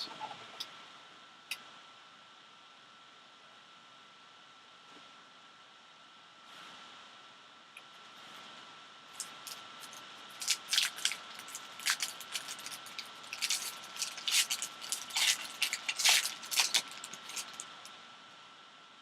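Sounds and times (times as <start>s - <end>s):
faint steady tone and hiss: 0.0s - 19.0s
plastic wrapping crinkling and tearing: 9.1s - 17.9s.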